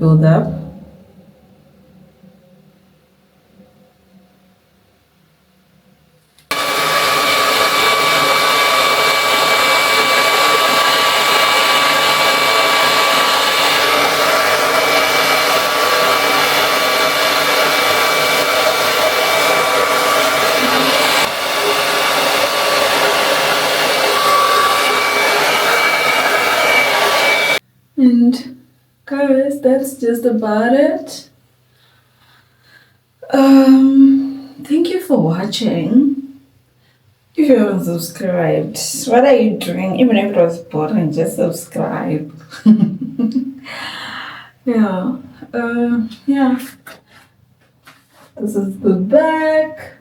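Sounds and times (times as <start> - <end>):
hair dryer blowing: 6.5 - 27.6.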